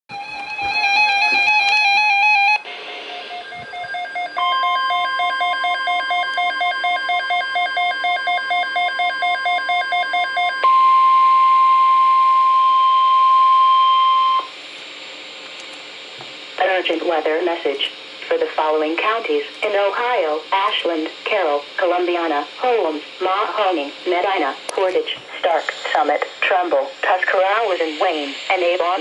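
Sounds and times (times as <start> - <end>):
warning alarm tone: 0.2 - 14.5
radio hiss: 2.6 - 3.9, 14.4 - 29.0.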